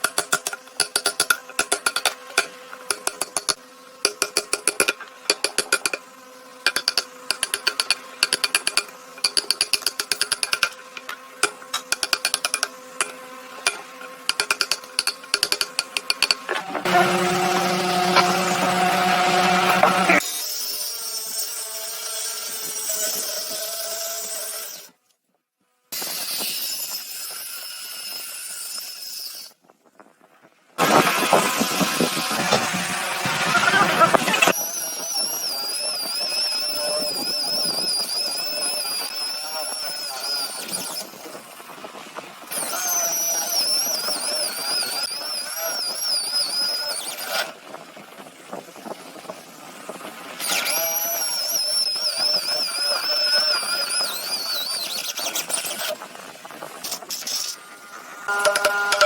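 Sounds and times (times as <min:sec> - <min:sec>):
tool rasping into wood: 0:06.7 - 0:20.3.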